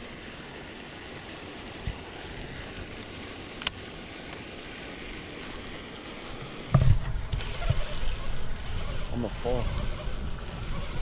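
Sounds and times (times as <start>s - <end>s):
wind noise on microphone: 6.7s - 11.0s.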